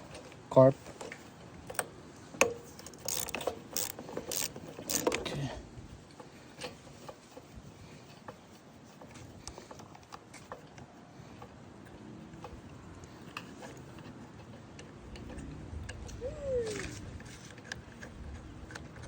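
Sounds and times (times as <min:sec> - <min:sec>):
wrench clicks and metal taps: 0:01.0 - 0:05.3.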